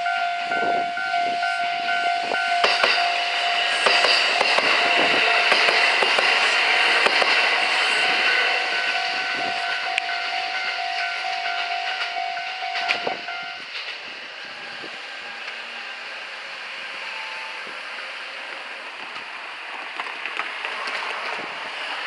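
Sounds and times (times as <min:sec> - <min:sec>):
level crossing warning bell: 0:00.0 - 0:13.7
electric train on rails: 0:00.0 - 0:22.0.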